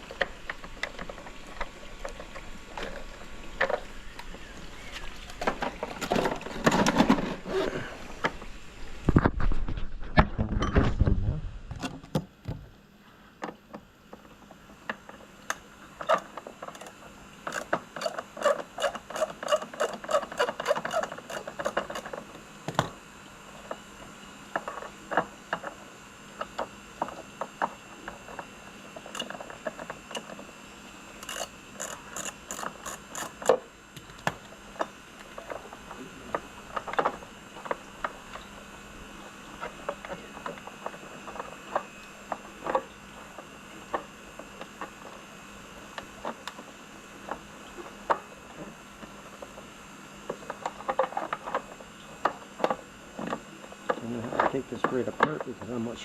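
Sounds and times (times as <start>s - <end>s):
ratcheting hand tool clicking: 31.2s - 33.5s.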